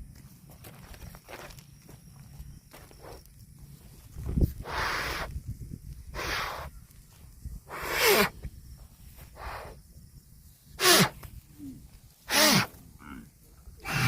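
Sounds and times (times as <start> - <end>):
cow snorting: 10.8 - 11.2
cow grunting: 12.3 - 14.0.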